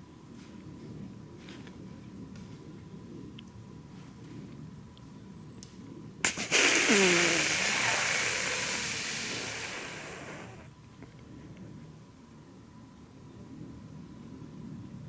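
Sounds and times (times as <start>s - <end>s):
deer hissing wheeze: 6.3s - 10.7s
deer snorting: 6.3s - 10.7s.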